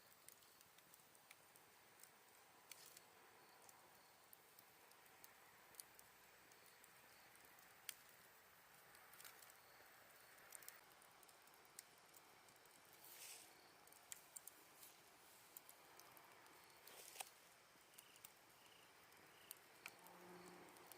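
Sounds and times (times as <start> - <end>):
campfire crackling and popping: 0.0 - 20.9
night insects: 0.0 - 20.9
fire hiss: 12.8 - 20.9.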